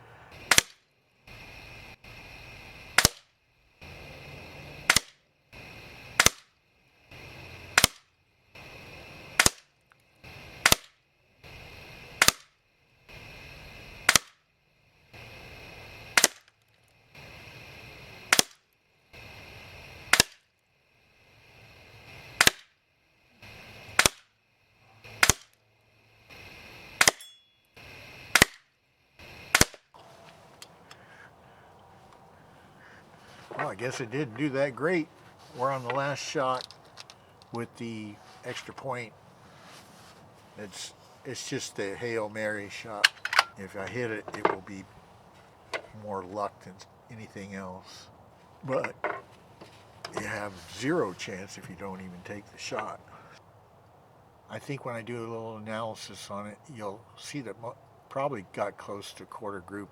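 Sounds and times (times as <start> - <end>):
air rifle shots: 0.3 - 1.4, 2.9 - 4.0, 4.8 - 6.5, 7.1 - 13.2, 13.8 - 14.4, 15.1 - 16.5, 17.1 - 18.6, 20.0 - 20.4, 22.0 - 22.7, 23.4 - 24.3, 25.0 - 25.6, 26.3 - 27.2, 27.8 - 29.9, 42.7 - 44.8.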